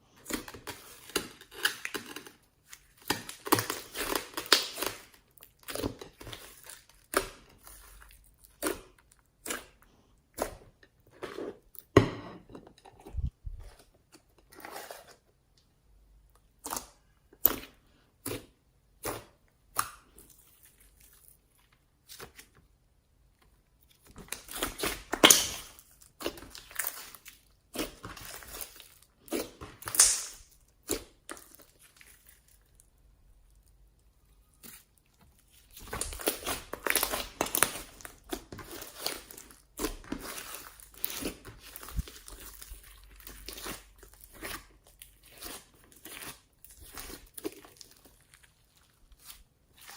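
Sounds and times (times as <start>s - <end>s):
slime crackling and popping: 1.4s - 9.8s, 24.1s - 32.8s, 35.6s - 49.9s.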